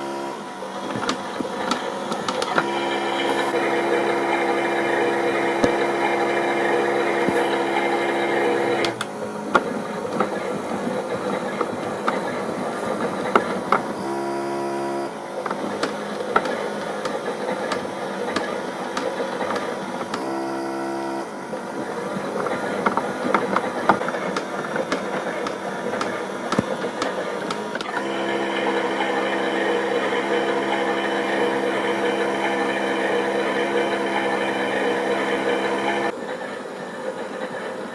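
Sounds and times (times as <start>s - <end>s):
toy washing machine motor whirring: 0.0s - 37.9s
clicks: 0.9s - 14.2s, 15.4s - 20.4s, 21.5s - 28.8s.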